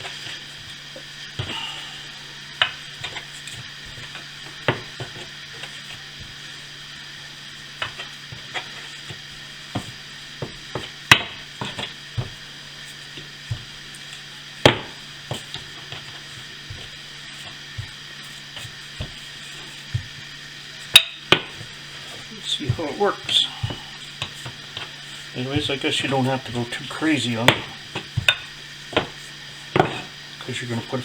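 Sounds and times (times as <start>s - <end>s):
steady low hum: 0.0s - 31.0s
rolling pin knocking on dough: 7.8s - 12.4s, 14.6s - 18.0s, 21.0s - 21.8s, 22.4s - 30.2s.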